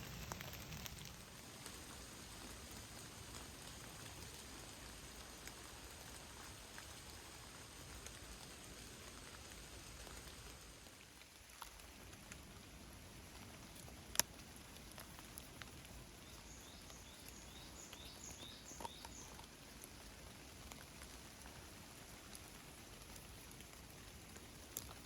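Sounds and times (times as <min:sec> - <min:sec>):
light rain with drips: 0:00.0 - 0:25.0
bird chirping: 0:16.2 - 0:19.5.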